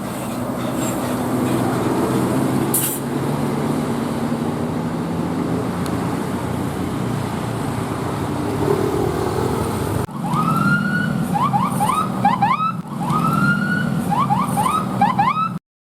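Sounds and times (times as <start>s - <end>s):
multi-tone bus horn tune: 0.0s - 3.0s
bus engine running: 0.0s - 15.1s.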